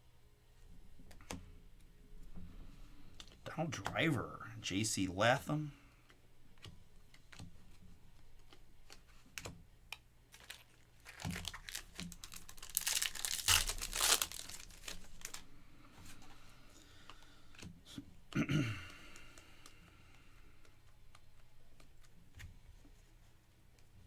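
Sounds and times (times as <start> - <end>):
plastic wrapper tearing and crinkling: 10.3 - 15.4.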